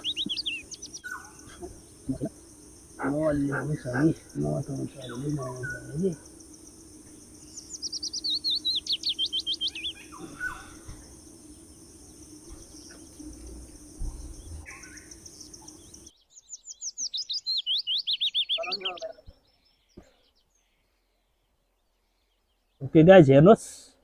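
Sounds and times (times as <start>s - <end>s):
high insect drone: 0.0s - 16.2s
songbird trilling: 0.0s - 20.0s.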